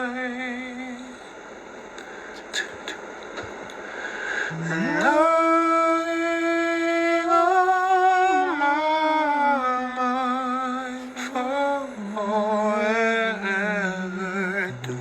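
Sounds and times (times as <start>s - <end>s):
man singing held note: 0.0s - 3.2s, 4.2s - 15.0s
faint clicks: 0.8s - 4.5s.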